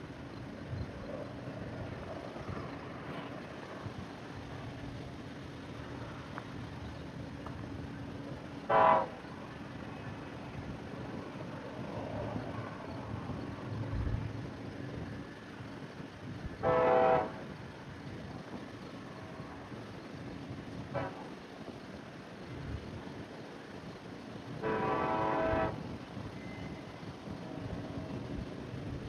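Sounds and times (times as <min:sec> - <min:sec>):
locomotive air horn blasts: 0:08.7 - 0:09.3, 0:16.6 - 0:17.5, 0:20.9 - 0:21.4, 0:24.6 - 0:25.9.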